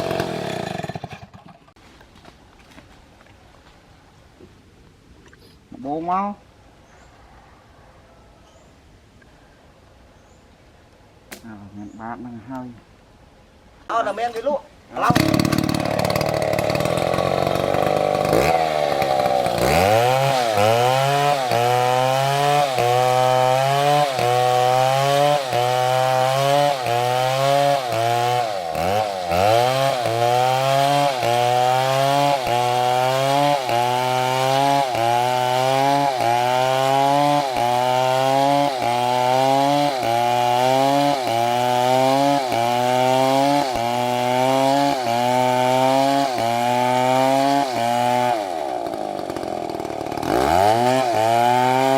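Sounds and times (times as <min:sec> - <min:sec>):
chainsaw cutting wood: 0:00.0 - 0:01.8, 0:15.0 - 0:51.9.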